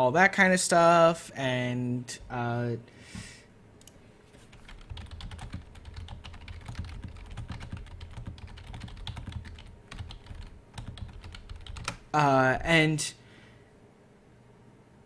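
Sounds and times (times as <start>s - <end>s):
typing on computer keyboard: 4.5s - 12.0s.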